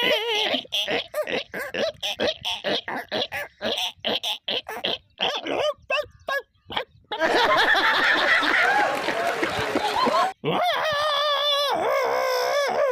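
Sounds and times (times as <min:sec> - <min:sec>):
squeaky voice bursts: 0:00.0 - 0:00.9
jumbled voices with laughter: 0:07.1 - 0:10.7.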